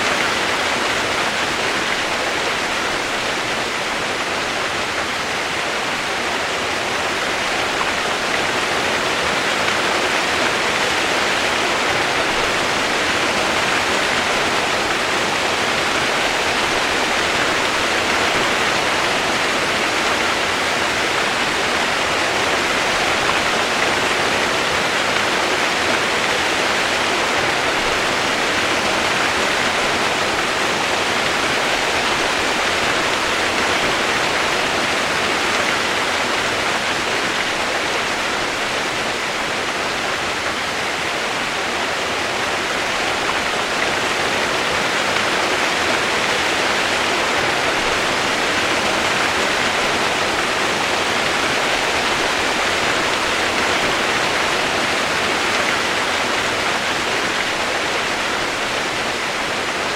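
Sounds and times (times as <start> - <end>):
steady rain hiss: 0.0 - 59.9.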